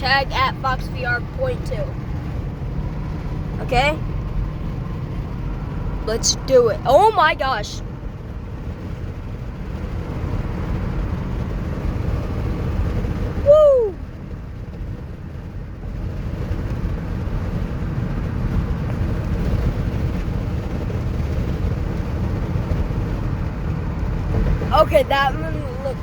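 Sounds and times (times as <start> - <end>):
car engine and road rumble: 0.0 - 26.0.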